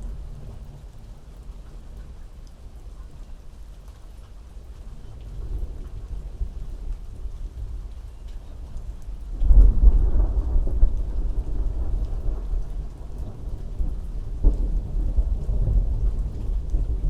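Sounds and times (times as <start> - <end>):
steady rain: 0.0 - 17.0
thunder rumbling: 5.3 - 17.0.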